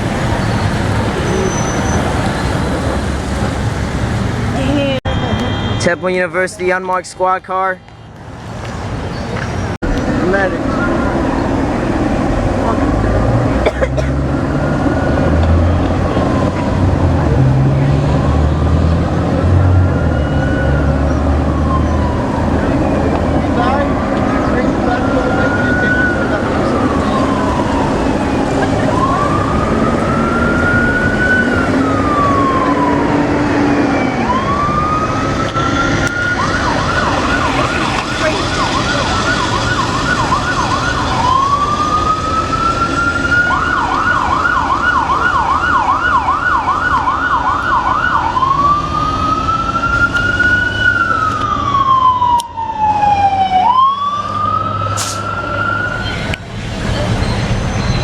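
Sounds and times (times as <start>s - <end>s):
electronic siren wailing and yelping: 24.7s - 56.0s.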